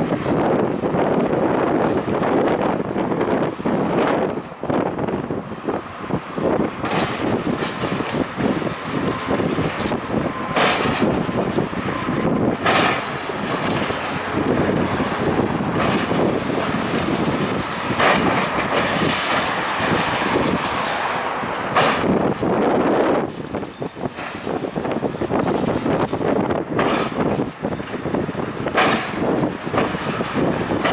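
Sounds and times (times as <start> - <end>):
debris crashing down: 6.8 - 21.1.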